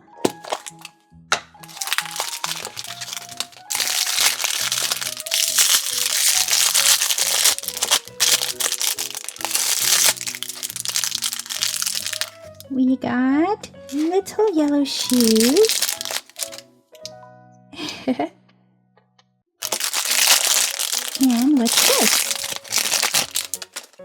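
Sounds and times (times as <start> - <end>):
background music: 0.0 - 18.9, 19.6 - 24.0
plastic wrapping crinkling: 0.2 - 0.9, 1.6 - 12.6, 13.9 - 14.2, 14.9 - 16.6, 19.6 - 24.0.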